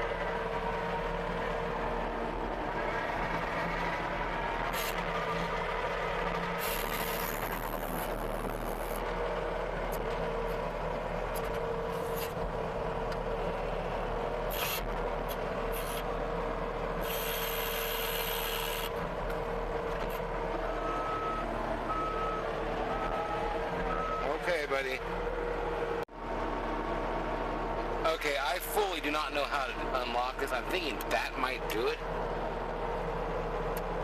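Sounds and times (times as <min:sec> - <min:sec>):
diesel engine running: 0:00.0 - 0:34.0
reversing beeper beeping: 0:20.8 - 0:24.4.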